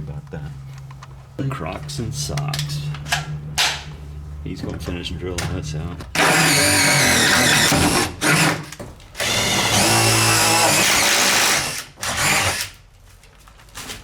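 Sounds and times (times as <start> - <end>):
cordless drill boring into wall: 6.2 - 12.8.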